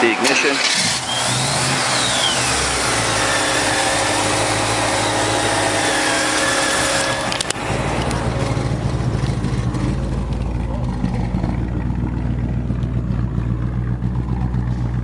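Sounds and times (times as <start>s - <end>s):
car engine idling: 0.0s - 15.0s
clicks: 7.2s - 8.2s.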